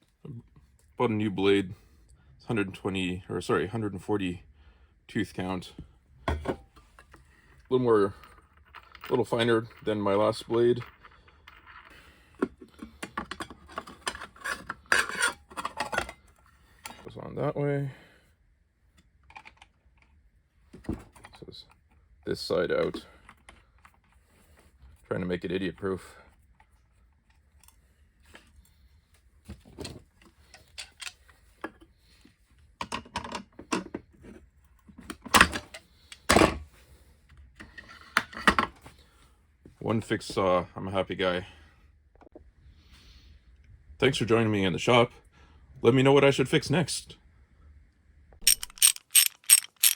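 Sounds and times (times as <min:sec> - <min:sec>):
saw blade clicks and scrapes: 0:48.4 - 0:49.9.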